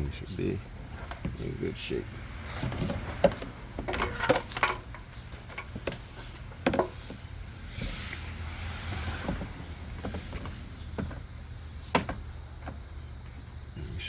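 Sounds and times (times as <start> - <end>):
plastic trim clicks and knocks: 11.9 - 12.8.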